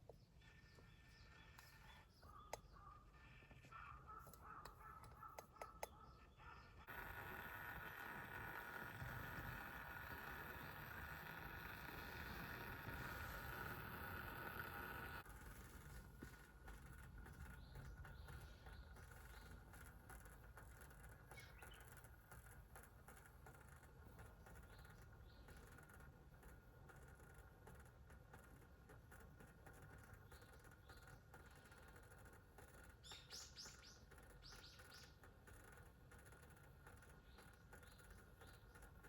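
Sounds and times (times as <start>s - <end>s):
faint bird chirps: 0.0s - 8.0s, 16.8s - 28.5s, 29.6s - 39.0s.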